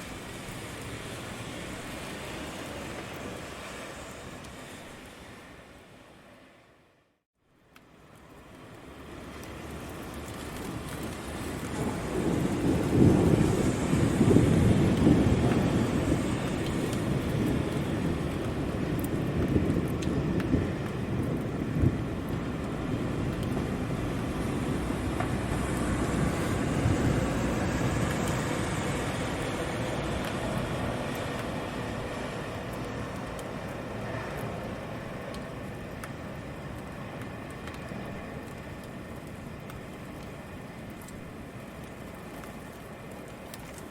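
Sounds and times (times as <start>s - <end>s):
road traffic hiss: 0.0s - 43.9s
steady rain: 0.0s - 43.9s
low rumble of thunder: 9.6s - 43.9s.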